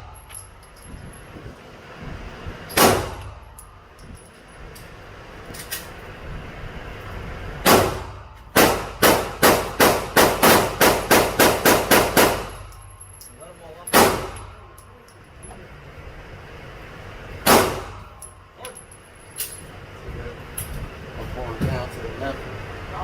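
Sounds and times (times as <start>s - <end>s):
gunshots: 7.6s - 12.5s, 17.5s - 18.0s
rapid string of gunshots: 7.6s - 12.5s.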